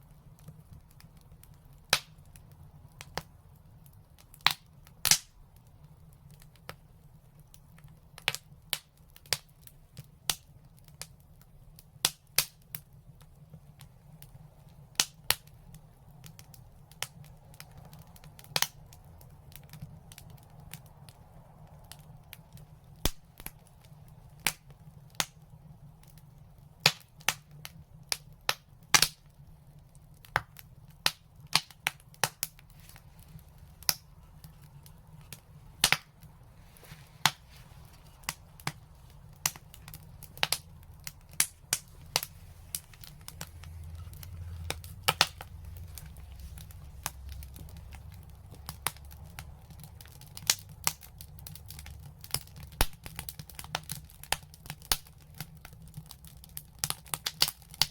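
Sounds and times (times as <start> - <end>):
wood fire crackling and popping: 0.0 - 57.9
low rumble: 37.3 - 48.4.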